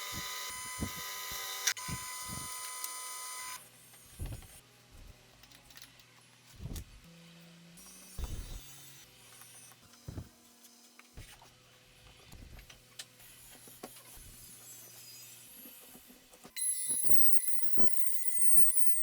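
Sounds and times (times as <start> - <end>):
power tool whine: 0.0 - 3.6, 16.6 - 19.0.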